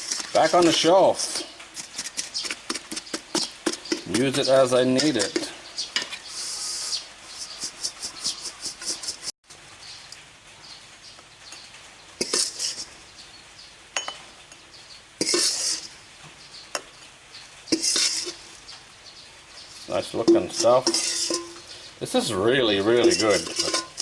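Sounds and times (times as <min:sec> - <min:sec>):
spoon clinking in a bowl: 0:14.0 - 0:14.2, 0:22.8 - 0:24.0.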